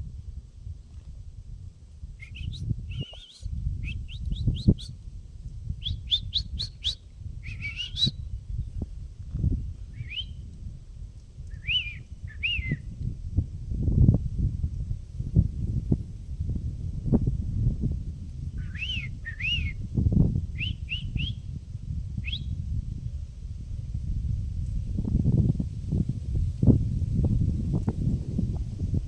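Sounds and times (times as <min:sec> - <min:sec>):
wind rumble on microphone: 0:00.0 - 0:29.0
songbird singing: 0:02.2 - 0:05.0, 0:05.6 - 0:09.0, 0:09.6 - 0:10.5, 0:11.5 - 0:13.0, 0:18.5 - 0:19.9, 0:20.5 - 0:21.6, 0:22.2 - 0:22.6.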